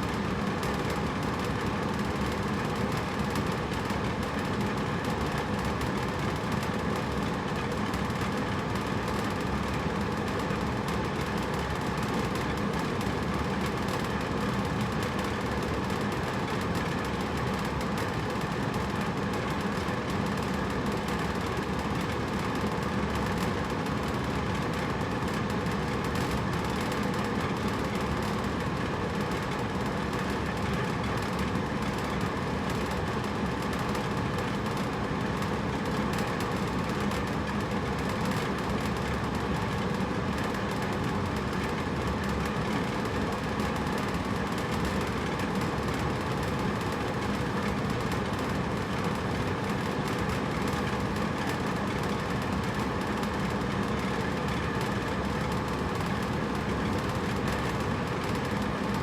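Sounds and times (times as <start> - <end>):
air conditioner humming: 0.0 - 59.0.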